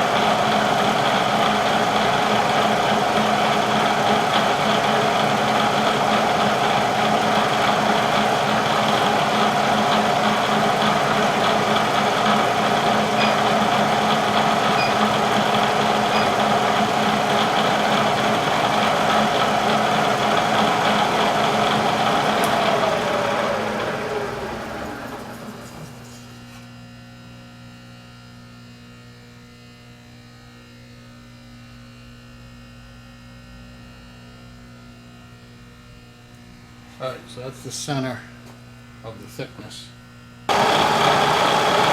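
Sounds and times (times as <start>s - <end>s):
milling machine spindle whine: 0.0s - 26.2s, 40.5s - 41.9s.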